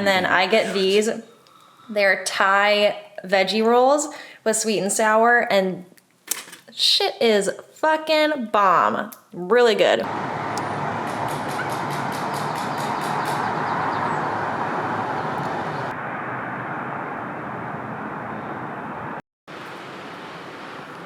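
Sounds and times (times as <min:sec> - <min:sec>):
steady vehicle noise: 0:10.1 - 0:21.0.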